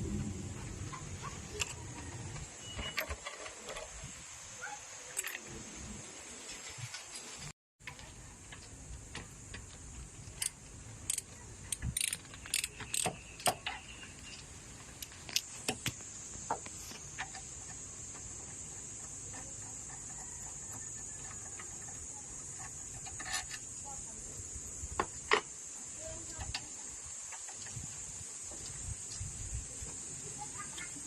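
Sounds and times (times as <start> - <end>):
steady hiss: 0.0 - 31.0.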